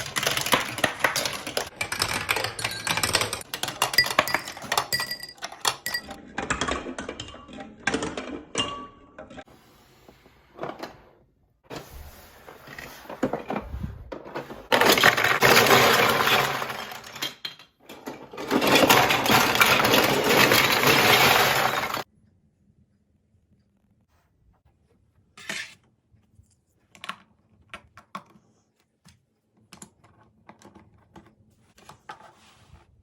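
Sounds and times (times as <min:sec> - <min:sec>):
marbles clattering in plastic run: 0:00.0 - 0:07.3, 0:14.7 - 0:22.1.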